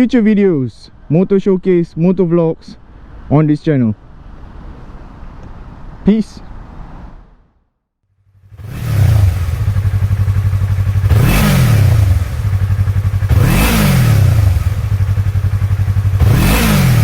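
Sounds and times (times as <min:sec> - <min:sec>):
motorcycle engine revving: 0:08.2 - 0:17.0.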